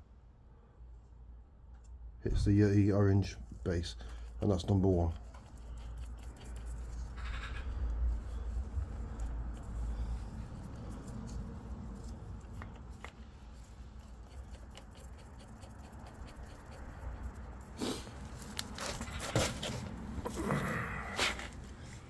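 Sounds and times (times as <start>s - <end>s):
low rumble: 2.2s - 3.0s.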